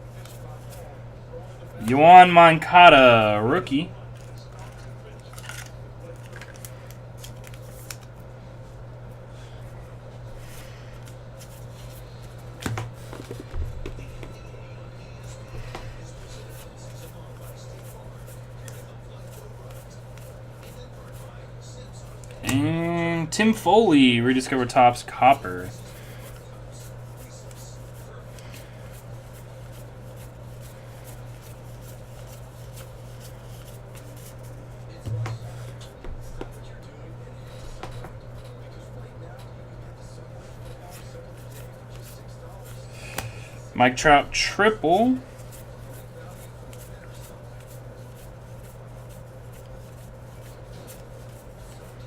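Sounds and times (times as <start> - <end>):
low electrical hum: 0.0 - 52.0
cards being flipped and rustled: 0.1 - 0.9, 2.8 - 8.2, 10.4 - 14.4, 15.2 - 21.3, 24.3 - 34.8, 40.4 - 43.4, 45.0 - 52.0
louder knocks: 35.1 - 35.5.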